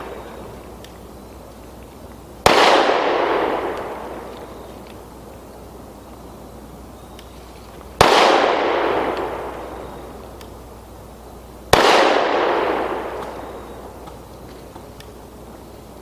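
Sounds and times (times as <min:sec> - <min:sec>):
pistol shots: 0:02.4 - 0:04.4, 0:08.0 - 0:10.0, 0:11.7 - 0:13.8.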